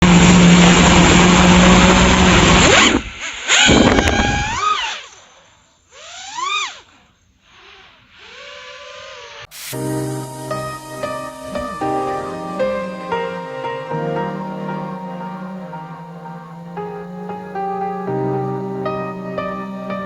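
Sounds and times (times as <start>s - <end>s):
drone motors whining: 10.0s - 20.0s.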